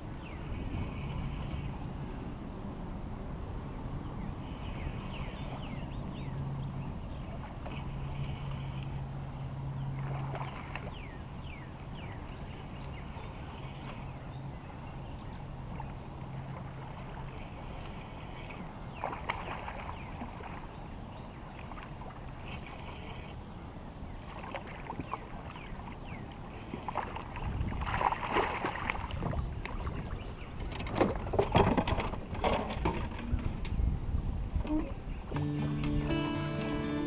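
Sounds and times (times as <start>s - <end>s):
water against boat hull: 6.6s - 11.2s, 15.6s - 23.4s, 24.2s - 33.8s.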